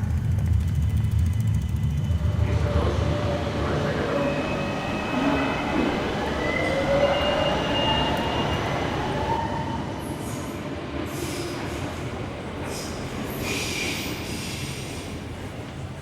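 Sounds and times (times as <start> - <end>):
train rumbling on rails: 0.0 - 16.0
high wheel squeals: 3.9 - 9.6.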